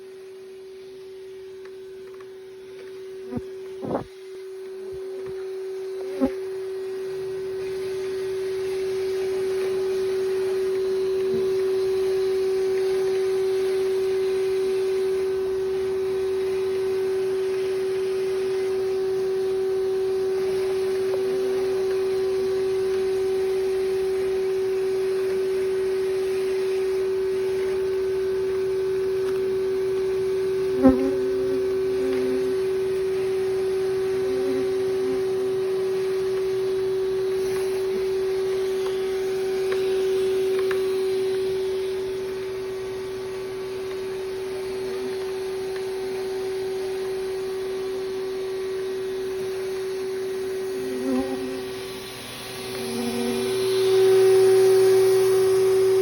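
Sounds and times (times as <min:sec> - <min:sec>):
vacuum motor hum: 0:00.0 - 0:56.0
rushing air and bees: 0:03.2 - 0:04.2.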